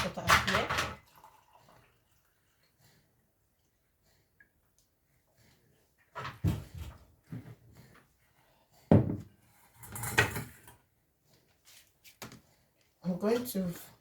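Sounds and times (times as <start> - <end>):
kitchen containers and utensils clattering: 0.0 - 1.8, 9.0 - 10.8.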